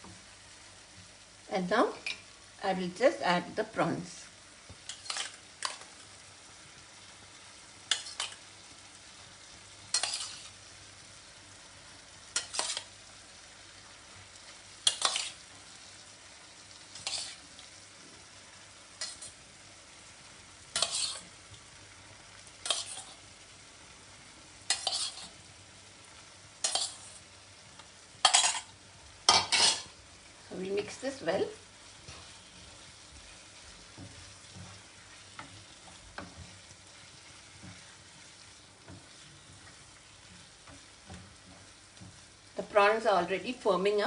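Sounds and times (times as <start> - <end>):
faint sizzle: 0.0 - 44.0
spoon scraping a pan: 4.8 - 6.0, 7.8 - 8.4, 9.9 - 10.6, 12.3 - 13.0, 14.8 - 15.5, 16.9 - 17.5, 19.0 - 19.4, 20.7 - 21.4, 22.6 - 23.2, 24.6 - 25.4, 26.6 - 27.2, 28.2 - 30.0, 31.9 - 42.3.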